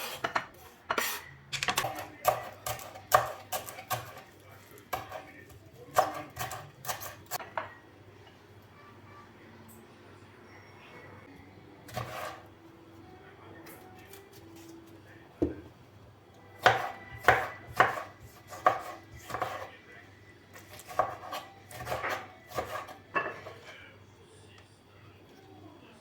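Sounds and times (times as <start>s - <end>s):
knife chopping on cutting board: 0.0s - 4.3s, 4.9s - 5.2s, 5.9s - 7.5s, 11.9s - 12.4s, 16.6s - 19.7s, 20.6s - 23.7s.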